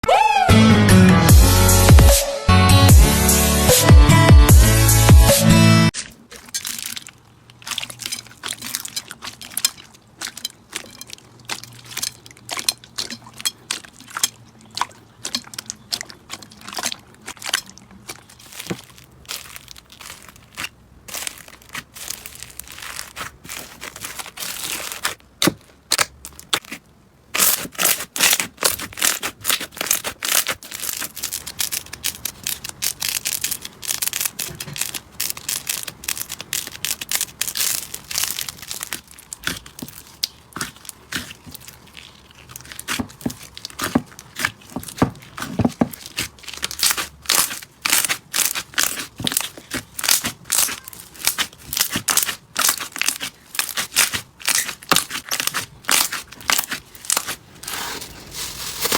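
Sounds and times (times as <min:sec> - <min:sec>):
slime crackling pops: 0:27.4 - 0:57.4.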